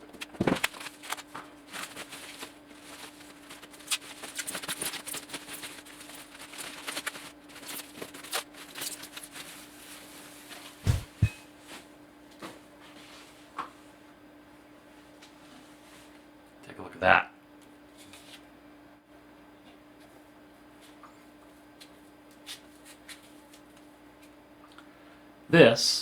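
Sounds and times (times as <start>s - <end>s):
dull thumps: 10.9s - 11.4s
faint steady hum: 10.9s - 11.4s.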